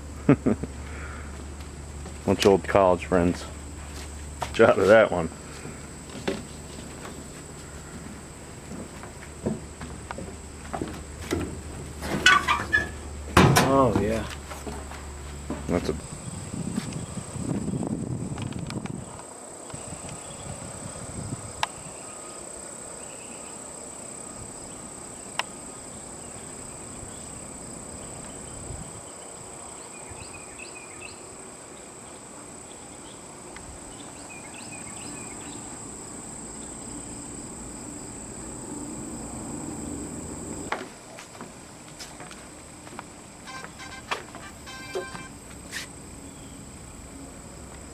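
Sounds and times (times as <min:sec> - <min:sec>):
high-pitched insect chorus: 0:00.3 - 0:40.9, 0:41.6 - 0:47.9.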